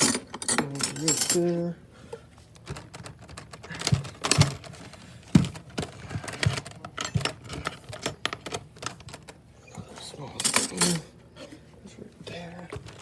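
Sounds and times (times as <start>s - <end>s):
silverware clicking and clinking: 0.0s - 1.6s, 10.4s - 11.1s.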